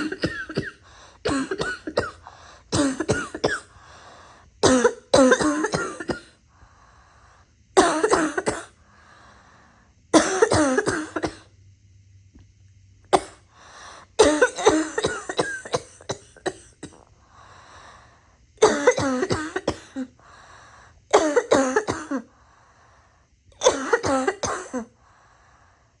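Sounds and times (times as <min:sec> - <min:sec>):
person coughing: 0:00.0 - 0:03.7, 0:04.6 - 0:06.4, 0:07.8 - 0:08.8, 0:10.2 - 0:11.5, 0:14.2 - 0:17.0, 0:18.6 - 0:20.1, 0:21.1 - 0:22.3, 0:23.6 - 0:24.9
quiet breaths: 0:00.8 - 0:01.2, 0:02.2 - 0:02.7, 0:03.7 - 0:04.6, 0:06.4 - 0:07.8, 0:08.8 - 0:10.1, 0:13.4 - 0:14.2, 0:17.0 - 0:18.6, 0:19.9 - 0:21.1, 0:22.2 - 0:23.6, 0:24.9 - 0:26.0.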